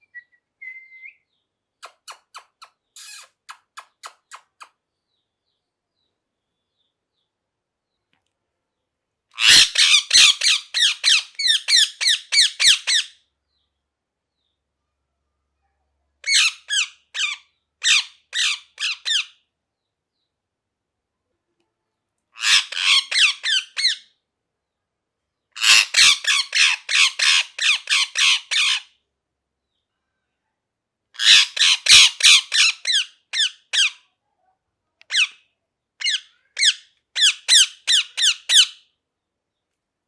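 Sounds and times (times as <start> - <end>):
parakeet screeching: 1.8 - 4.7, 9.4 - 13.1, 22.4 - 24.0, 25.6 - 28.8, 31.2 - 34.0, 36.0 - 38.8.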